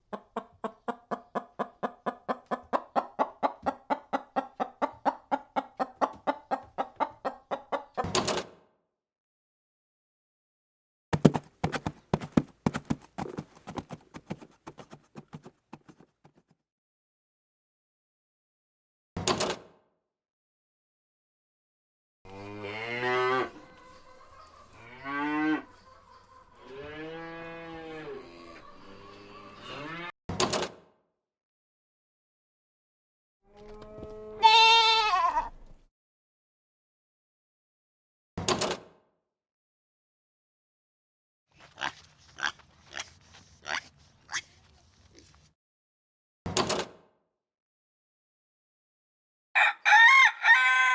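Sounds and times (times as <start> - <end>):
chicken clucking: 0.0 - 8.2, 23.5 - 27.0, 41.6 - 45.3
chicken squawk: 0.1 - 8.1, 23.4 - 26.9, 41.6 - 44.6, 49.6 - 50.9
cattle mooing: 22.3 - 23.7, 24.8 - 25.8, 26.6 - 28.6.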